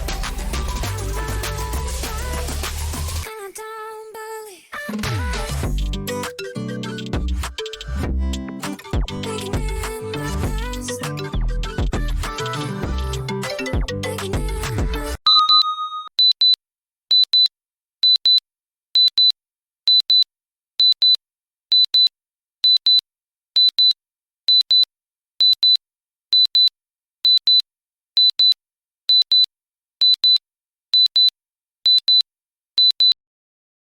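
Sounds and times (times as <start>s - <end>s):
timer alarm double beeps: 15.2s - 17.5s.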